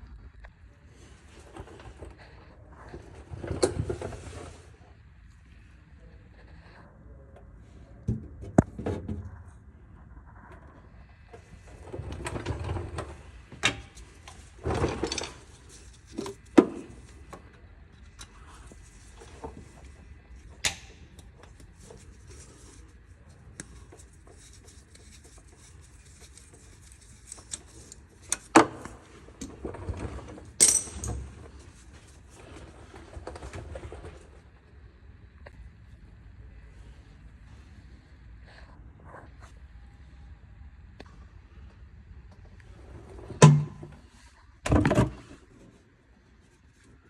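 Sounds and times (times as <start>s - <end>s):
scraping and rustling: 8.5s - 34.6s
metal tools clinking: 30.6s - 31.4s.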